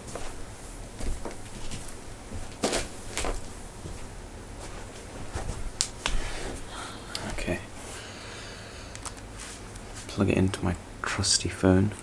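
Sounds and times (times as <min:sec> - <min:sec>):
rustling handling knocks: 0:00.0 - 0:06.7
low steady hum: 0:00.0 - 0:12.0.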